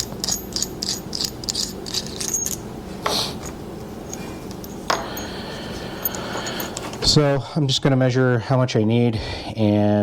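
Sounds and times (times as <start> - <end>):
small metal parts clicking: 0.0 - 2.6.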